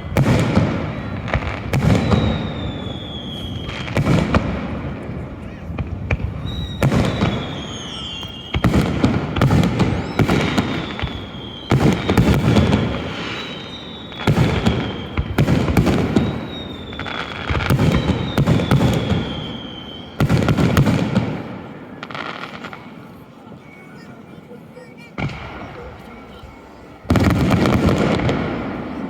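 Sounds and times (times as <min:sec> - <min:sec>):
fireworks booming: 0:00.0 - 0:23.4, 0:25.1 - 0:29.0
fireworks crackle: 0:00.0 - 0:23.4, 0:25.2 - 0:29.0
high descending whistles: 0:06.4 - 0:08.6.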